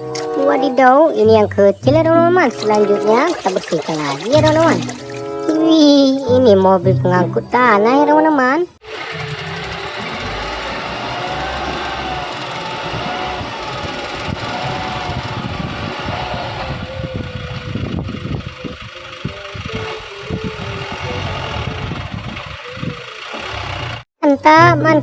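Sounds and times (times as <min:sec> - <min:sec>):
small motor rattling hum: 0:08.8 - 0:24.0.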